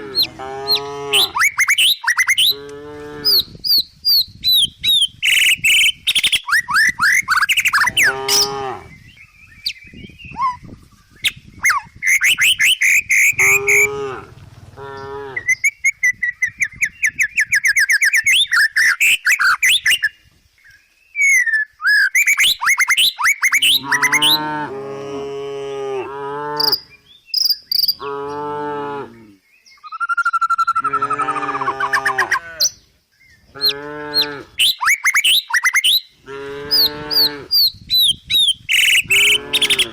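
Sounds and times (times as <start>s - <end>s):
cattle mooing: 0.0s - 1.4s, 7.8s - 8.9s, 13.3s - 15.5s, 23.8s - 26.8s, 30.9s - 32.7s, 36.3s - 37.5s, 39.1s - 39.9s
birds chirping: 0.0s - 24.5s, 26.6s - 39.9s.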